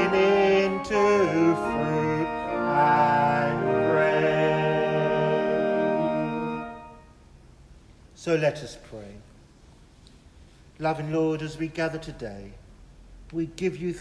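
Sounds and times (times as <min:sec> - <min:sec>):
congregation singing a hymn: 0:00.0 - 0:06.8
organ accompaniment: 0:00.0 - 0:07.2.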